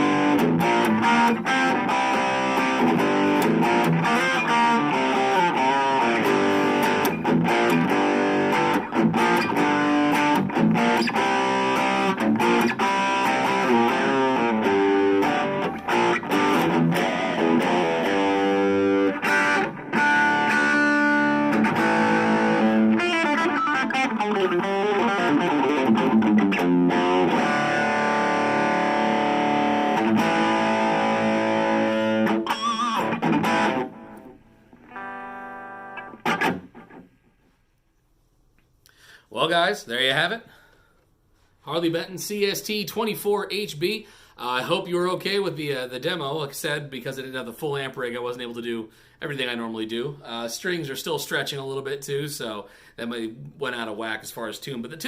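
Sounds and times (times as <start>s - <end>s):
electric guitar lead playing: 0.0s - 37.5s.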